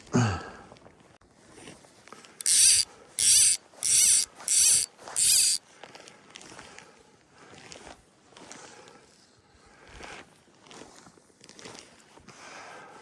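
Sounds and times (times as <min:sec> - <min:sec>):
fly reel ratchet clicking: 0:02.4 - 0:05.6.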